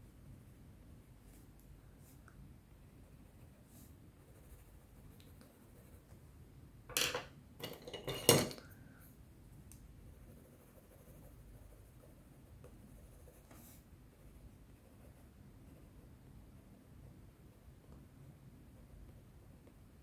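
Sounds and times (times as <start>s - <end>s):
pencils clattering together: 6.9s - 8.6s.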